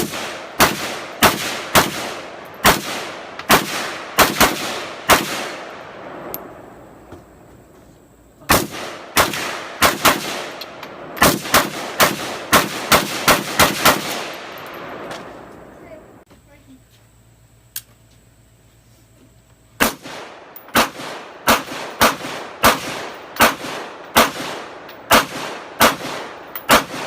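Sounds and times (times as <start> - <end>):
rifle shots with echo: 0.0 - 6.3, 8.5 - 15.5, 19.8 - 27.0.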